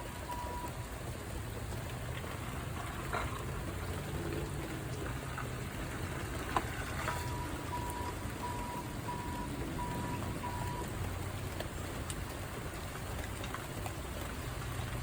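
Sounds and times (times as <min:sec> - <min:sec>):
steady rain falling: 0:00.0 - 0:15.0.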